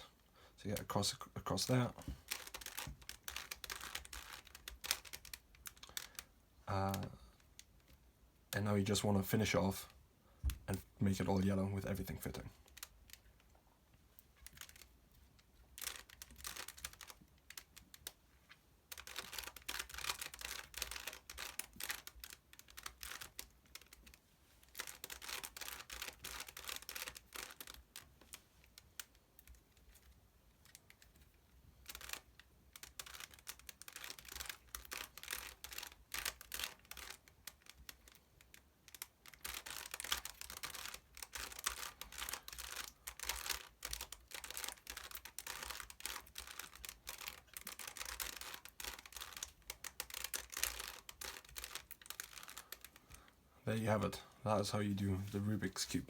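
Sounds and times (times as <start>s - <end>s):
puzzle cube plastic clicks: 1.7s - 8.0s, 14.2s - 18.2s, 18.8s - 53.3s.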